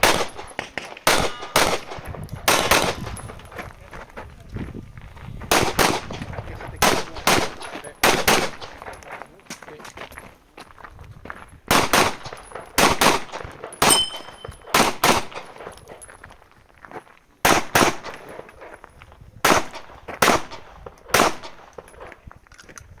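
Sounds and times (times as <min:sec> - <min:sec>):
pistol shots: 0:00.0 - 0:03.6, 0:05.5 - 0:09.1, 0:11.7 - 0:16.0, 0:17.4 - 0:18.8, 0:19.4 - 0:22.2
short metallic ring: 0:13.8 - 0:14.7.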